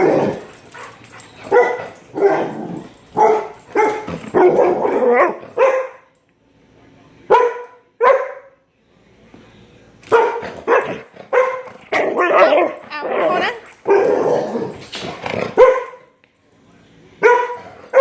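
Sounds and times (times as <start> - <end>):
dog barking: 1.5 - 2.6, 3.2 - 6.1, 7.3 - 8.6, 10.1 - 12.8, 15.5 - 16.1, 17.2 - 18.0.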